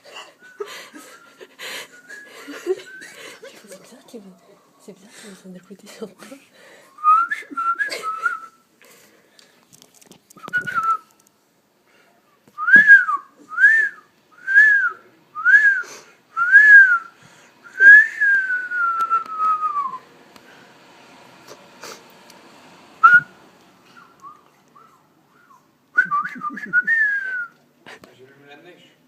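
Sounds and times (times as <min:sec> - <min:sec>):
person whistling: 0:00.4 - 0:03.2, 0:07.0 - 0:08.6, 0:10.4 - 0:11.1, 0:12.6 - 0:17.1, 0:17.7 - 0:20.0, 0:23.0 - 0:23.3, 0:24.0 - 0:27.6.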